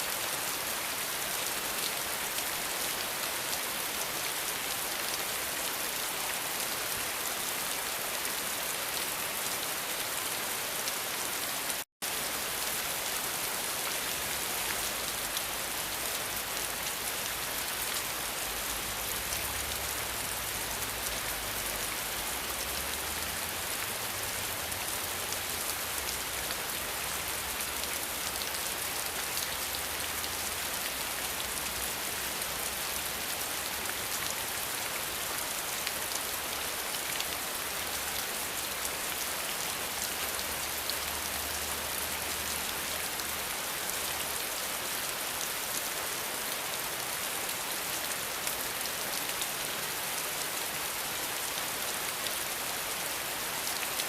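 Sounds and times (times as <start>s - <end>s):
rain falling on a surface: 0.0s - 54.0s.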